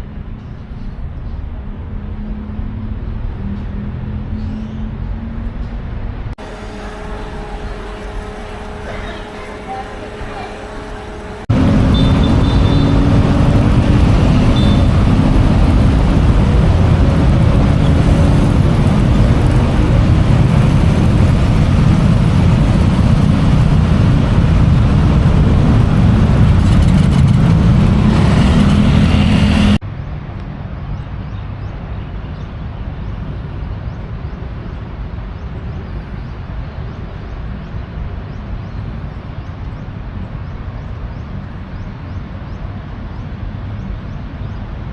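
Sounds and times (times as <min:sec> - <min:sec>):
traffic noise: 0:00.0 - 0:44.9
vehicle engine running: 0:06.4 - 0:29.8.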